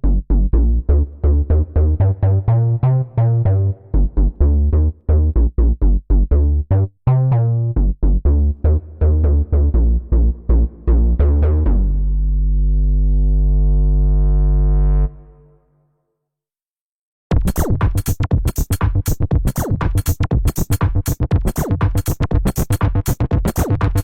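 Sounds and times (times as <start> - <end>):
synth bass plucky notes: 0.0 - 15.6
long low synth note: 9.3 - 16.0.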